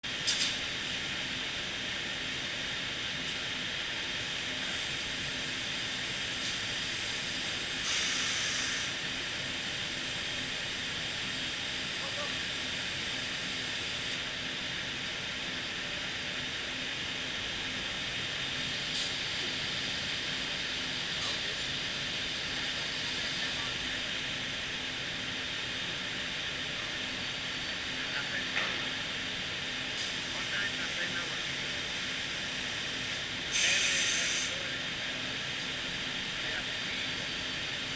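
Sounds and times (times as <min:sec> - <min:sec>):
hiss of running machinery: 0:00.1 - 0:37.9
woodworking machine hissing: 0:04.2 - 0:14.2, 0:30.0 - 0:34.7.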